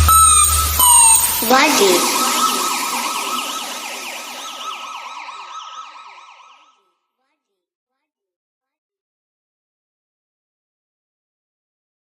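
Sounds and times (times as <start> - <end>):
police siren yelp: 0.0 - 6.9.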